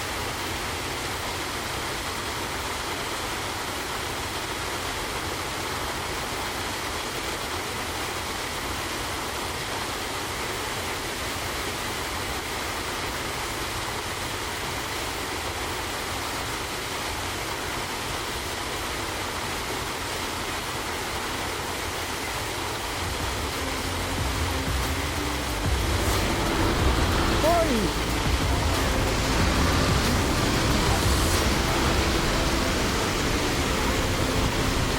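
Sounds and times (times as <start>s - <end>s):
waterfall roaring: 0.0s - 34.9s
deep rumble: 23.0s - 34.9s.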